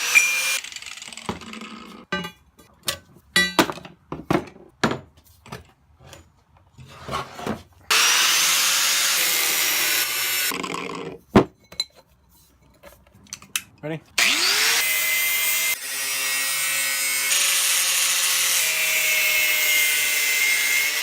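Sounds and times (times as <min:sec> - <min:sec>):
power tool cutting steel: 0:00.0 - 0:01.9, 0:07.9 - 0:10.8, 0:14.2 - 0:21.0.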